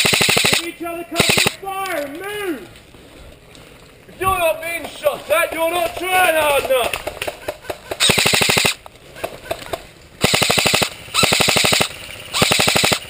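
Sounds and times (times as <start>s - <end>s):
airsoft rifle full-auto bursts: 0.0s - 1.6s, 7.0s - 8.8s, 10.2s - 13.0s.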